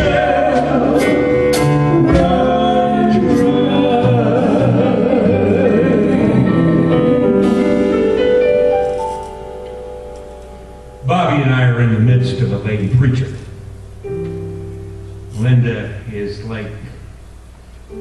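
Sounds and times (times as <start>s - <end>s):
person singing with vibrato: 0.0s - 8.2s
band accompaniment: 0.0s - 15.8s.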